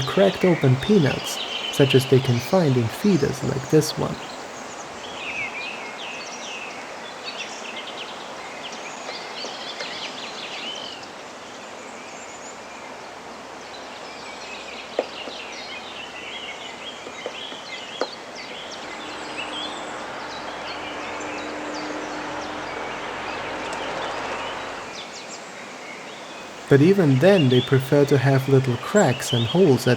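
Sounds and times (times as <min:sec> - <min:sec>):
songbirds chirping and singing: 0:00.0 - 0:04.7, 0:26.5 - 0:29.9
faint steady hum: 0:00.0 - 0:04.8, 0:18.6 - 0:25.0, 0:26.4 - 0:29.9
outdoor hiss: 0:00.0 - 0:05.3, 0:18.6 - 0:29.9.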